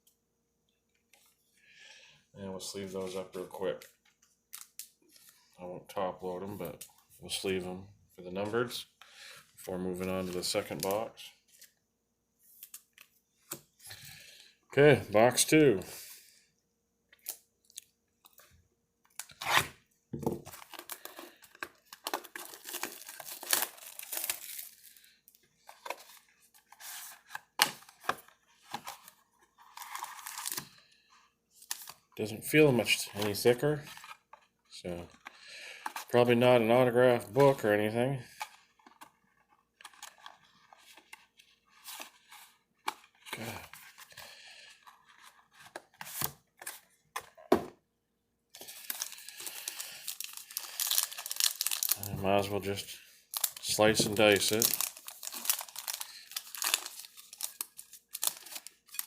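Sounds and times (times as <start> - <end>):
wrapper crinkling and tearing: 20.5 - 30.8, 48.6 - 59.0.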